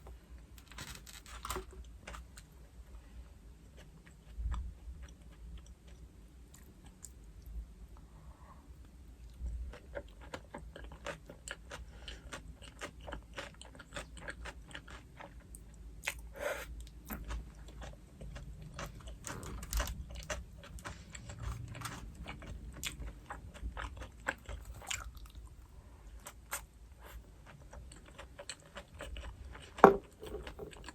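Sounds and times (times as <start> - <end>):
crunching of fried crust: 0.6 - 2.5, 9.7 - 30.9
chewing: 8.8 - 30.9.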